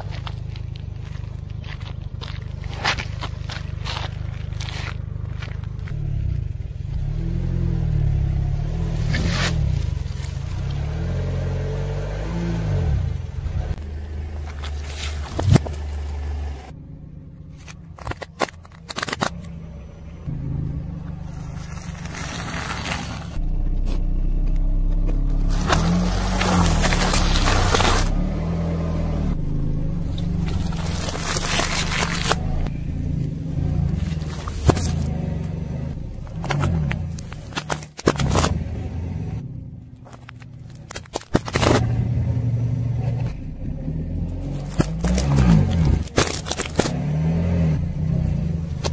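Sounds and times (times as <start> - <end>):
car engine running low: 0.0 - 48.9
tyre crushing objects: 25.0 - 28.3, 30.3 - 32.6, 33.9 - 35.6, 36.2 - 38.8, 40.0 - 42.1, 44.3 - 47.6.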